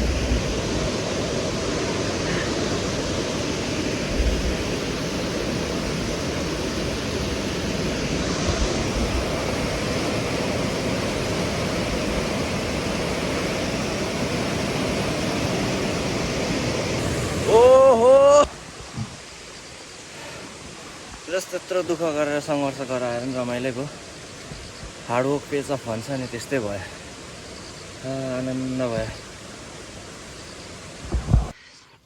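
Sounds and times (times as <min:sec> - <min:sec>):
wind bumps on microphone: 0:00.0 - 0:17.7, 0:18.7 - 0:19.3, 0:31.0 - 0:31.6
river water rushing: 0:00.0 - 0:31.2.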